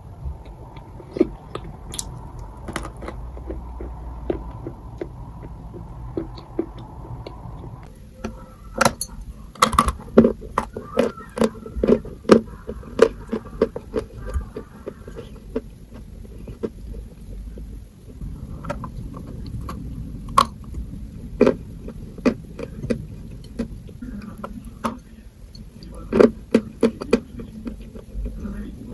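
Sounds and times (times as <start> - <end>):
chalk being chewed: 0.4 - 7.7, 10.3 - 18.3.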